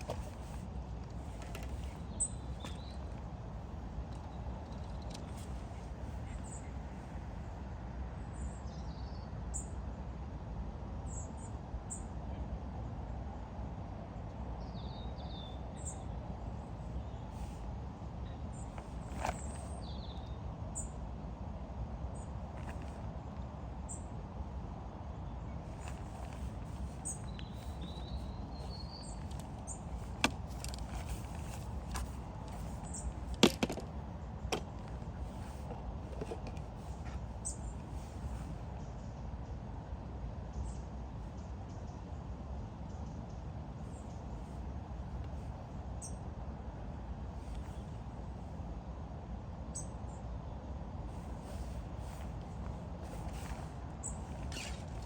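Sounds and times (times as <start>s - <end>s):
small birds chirping: 0.0s - 7.6s, 14.6s - 20.9s, 25.2s - 39.1s, 51.1s - 55.0s
low outdoor background noise: 0.0s - 55.0s.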